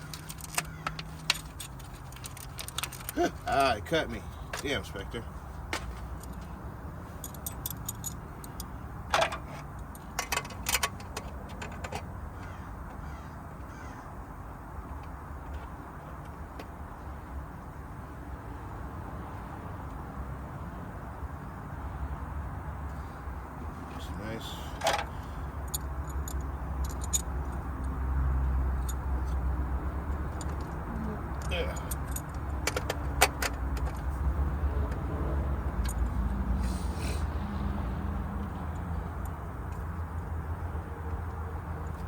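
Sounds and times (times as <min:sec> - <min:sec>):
metallic clinks of tools: 0:07.2 - 0:08.7.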